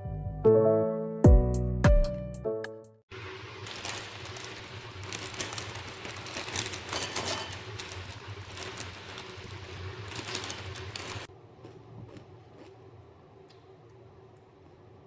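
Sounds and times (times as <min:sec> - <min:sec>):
small hard objects clattering: 0:03.2 - 0:11.3.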